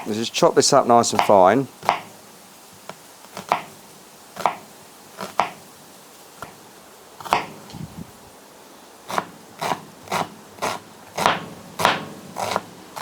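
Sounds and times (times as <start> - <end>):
knife chopping on a board: 1.1 - 2.2, 2.9 - 3.8, 4.4 - 5.6, 7.2 - 7.7, 9.1 - 13.0.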